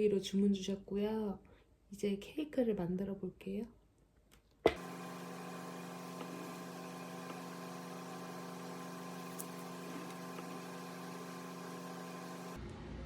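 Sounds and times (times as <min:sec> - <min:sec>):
steady electrical hum: 0:04.8 - 0:12.6.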